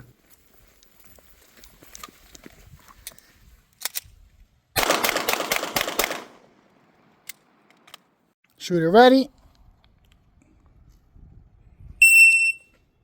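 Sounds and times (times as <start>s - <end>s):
gunshots: 4.8s - 6.5s.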